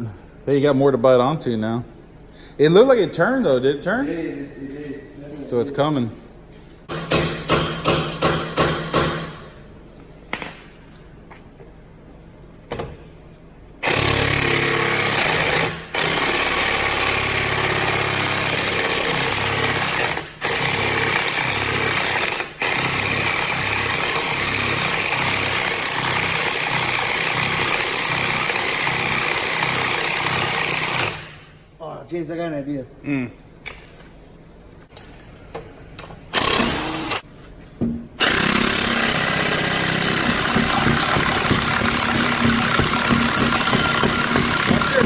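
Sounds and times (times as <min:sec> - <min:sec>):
impact wrench hammering: 0:06.9 - 0:09.6, 0:13.8 - 0:31.5, 0:37.8 - 0:45.0.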